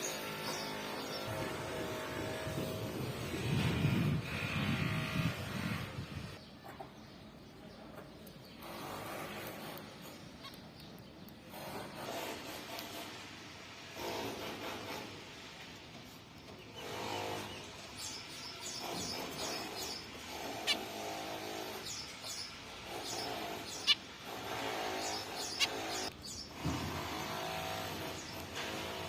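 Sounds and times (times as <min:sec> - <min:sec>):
finches calling: 0:08.2 - 0:13.0, 0:16.6 - 0:29.0.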